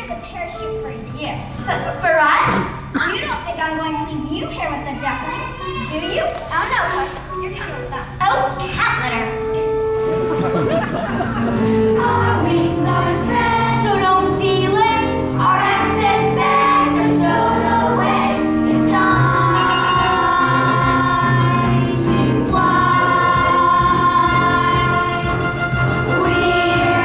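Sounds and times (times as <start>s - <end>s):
instrumental accompaniment: 5.4s - 27.0s
group singing a show song: 11.9s - 14.8s, 15.4s - 27.0s.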